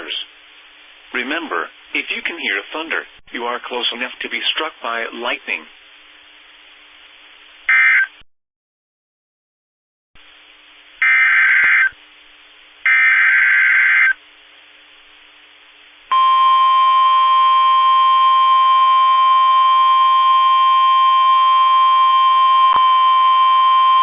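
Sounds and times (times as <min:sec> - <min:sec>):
steady warning alarm tone: 0:11.0 - 0:11.9, 0:16.1 - 0:24.0
harsh digital data bursts: 0:12.9 - 0:14.2.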